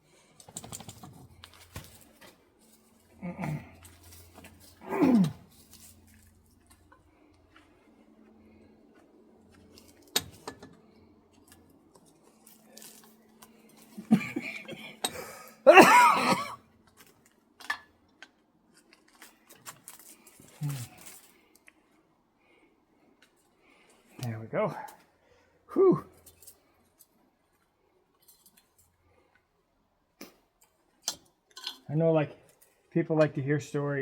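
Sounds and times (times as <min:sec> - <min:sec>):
man grunting with effort: 0:03.2 - 0:03.8, 0:04.8 - 0:05.4, 0:15.7 - 0:16.5, 0:25.7 - 0:26.1.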